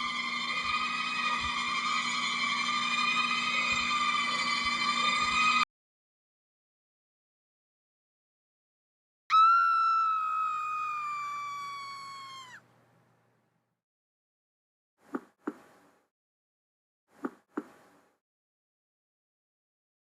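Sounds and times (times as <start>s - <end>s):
loud sustained high tone: 0.0s - 5.6s.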